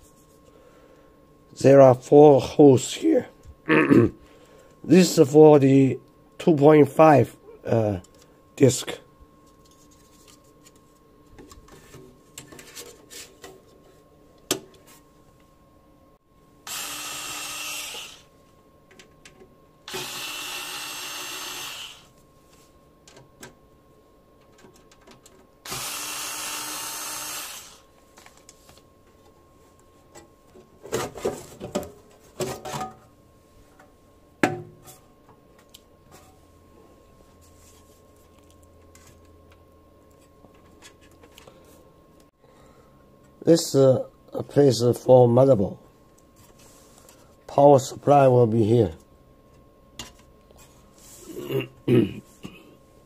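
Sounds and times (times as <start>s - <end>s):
electric screwdriver running: 16.7s - 18.3s, 19.9s - 22.1s, 25.6s - 27.9s.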